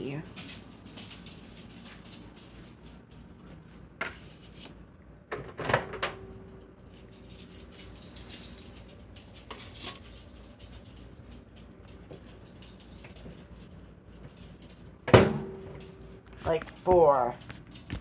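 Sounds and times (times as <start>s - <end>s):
microwave door opening and shutting: 5.3s - 6.5s, 15.0s - 16.0s.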